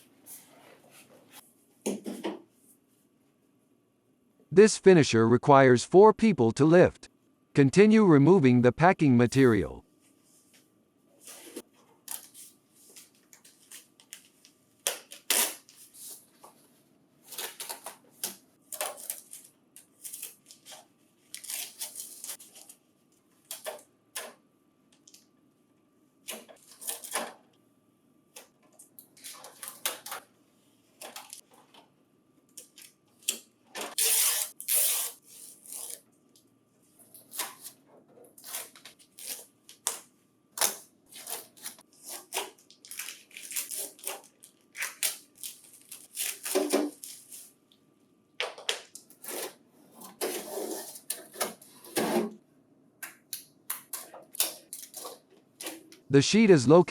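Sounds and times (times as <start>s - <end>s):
packing material rustling and crinkling: 41.1s - 47.6s.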